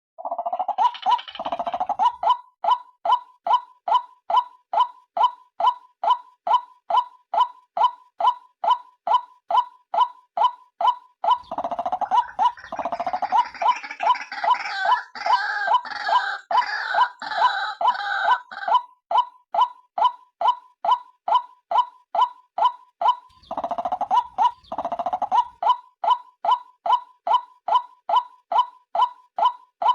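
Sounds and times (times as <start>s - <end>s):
harsh chattering bird chorus: 0.8s - 1.9s, 11.4s - 18.7s, 23.3s - 25.6s.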